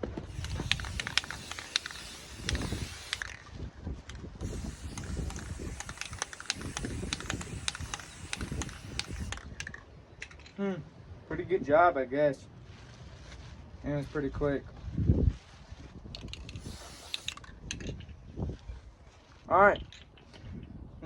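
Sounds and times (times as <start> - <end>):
aerosol can spraying: 0.3 - 3.4, 4.4 - 9.5, 16.4 - 17.5.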